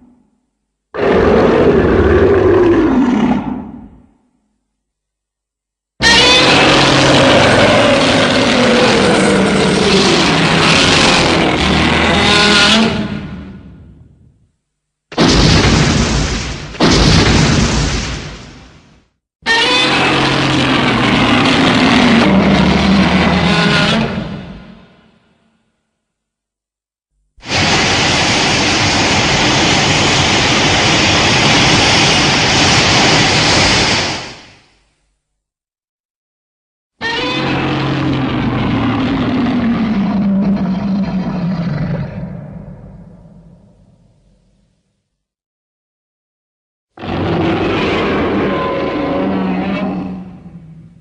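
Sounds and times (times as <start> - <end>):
engine-like roar: 6.0 - 13.6, 19.5 - 25.0, 37.0 - 43.3
loud rushing hiss: 27.4 - 34.9.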